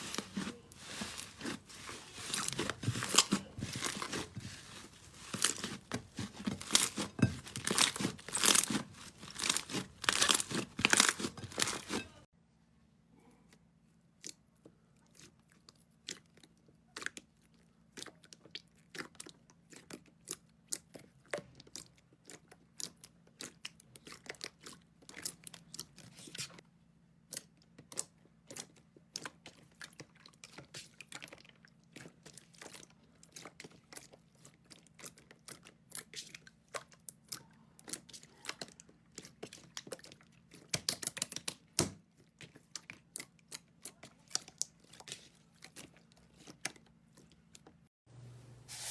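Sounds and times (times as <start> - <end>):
slime crackling and popping: 0.0 - 12.1.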